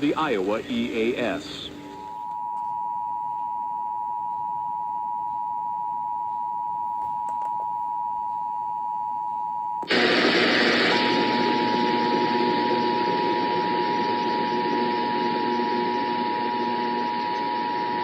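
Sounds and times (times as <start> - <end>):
loud static hiss: 0.0 - 2.2, 9.8 - 18.0.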